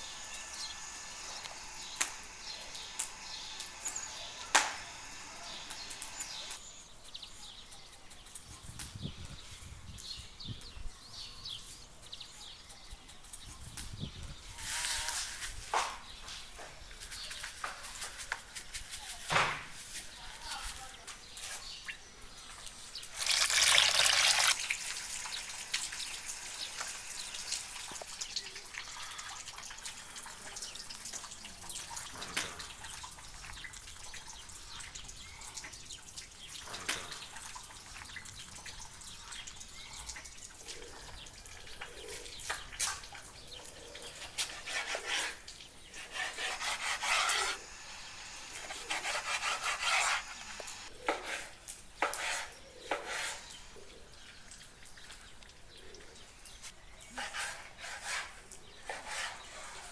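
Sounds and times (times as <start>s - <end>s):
water running and splashing: 22.4s - 46.0s
rubbing and handling sounds: 44.1s - 53.5s.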